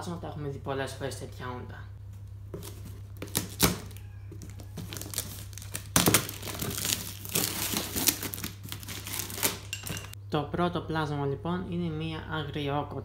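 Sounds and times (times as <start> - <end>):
packaging crinkling and tearing: 2.6 - 9.9.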